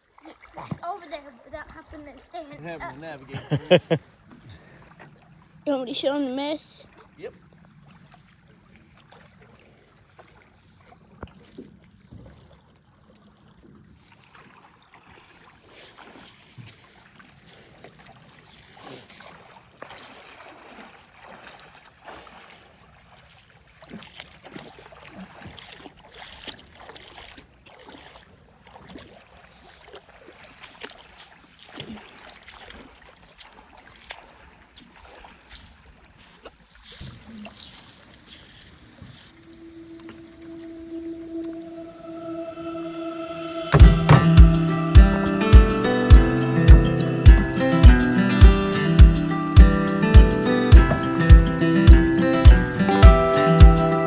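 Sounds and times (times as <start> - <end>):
river water splashing: 0.0 - 54.0
knocks and taps: 50.2 - 53.7.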